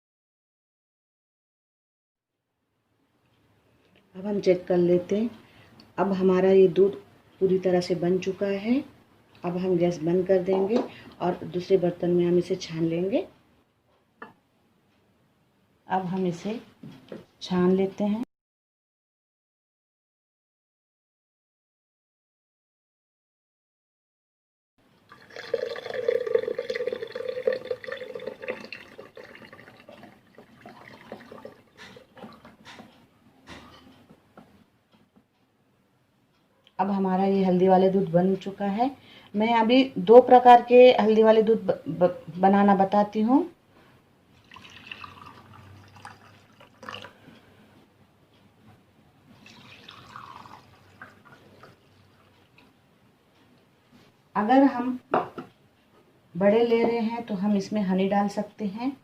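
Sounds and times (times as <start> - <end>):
milk pouring through strainer: 25.1 - 32.5, 44.4 - 47.2, 49.4 - 52.3.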